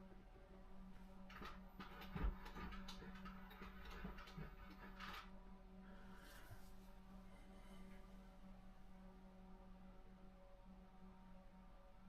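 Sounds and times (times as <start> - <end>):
steady low hum: 0.0 - 12.0
faint rustle: 1.2 - 8.8.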